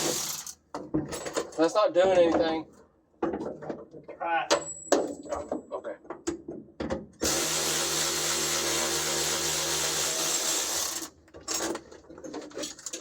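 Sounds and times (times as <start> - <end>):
power drill running: 0.0 - 0.5, 7.2 - 11.1.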